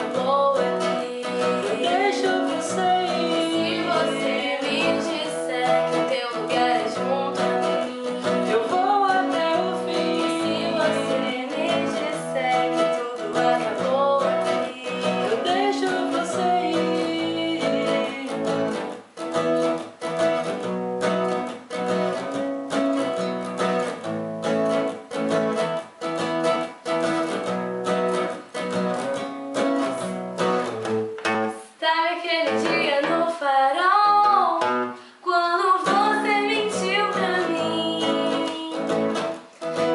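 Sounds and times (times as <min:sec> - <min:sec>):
woman singing a ballad: 0:00.0 - 0:19.0, 0:31.7 - 0:39.9
strummed acoustic guitar: 0:00.0 - 0:39.9.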